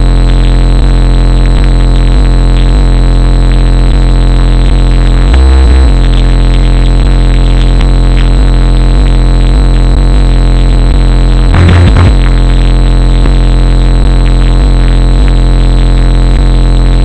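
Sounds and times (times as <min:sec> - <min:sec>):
distorted bass-heavy music: 0:00.0 - 0:17.0
low crackling blasts: 0:11.5 - 0:13.4.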